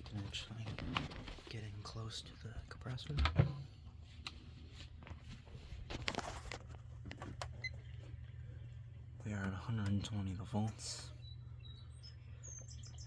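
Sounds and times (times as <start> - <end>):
fridge compressor hum: 0.0 - 13.0
handling knocks and rustles: 2.8 - 7.7.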